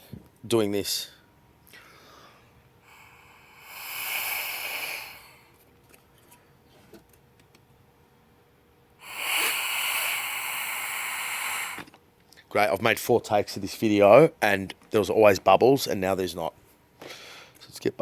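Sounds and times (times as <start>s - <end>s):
air hissing through a hose: 2.9s - 5.6s, 9.0s - 12.0s.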